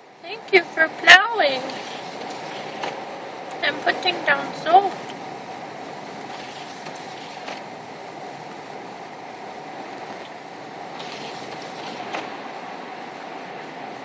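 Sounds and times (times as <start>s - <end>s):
car road and engine noise: 0.0s - 14.0s.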